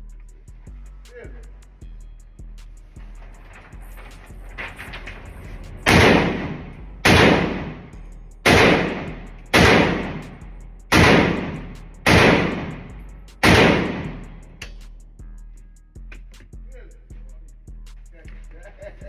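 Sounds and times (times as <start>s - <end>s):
gunshots: 5.8s - 7.9s, 8.5s - 14.5s.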